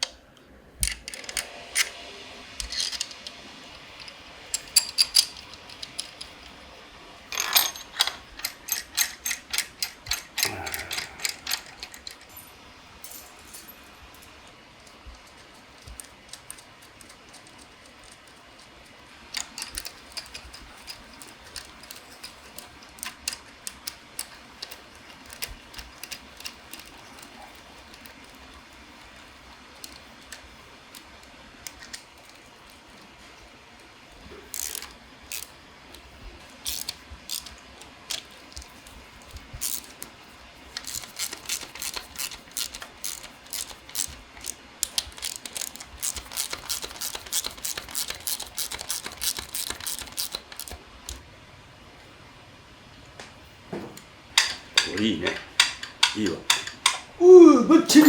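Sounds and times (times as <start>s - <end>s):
metal parts and tools clinking: 2.6s - 3.3s, 4.0s - 6.6s, 7.3s - 13.9s, 19.3s - 28.1s, 40.7s - 50.8s.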